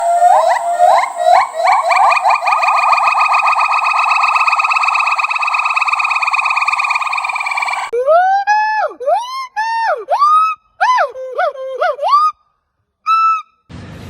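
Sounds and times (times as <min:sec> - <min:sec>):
primate whistling trill: 0:00.0 - 0:07.9.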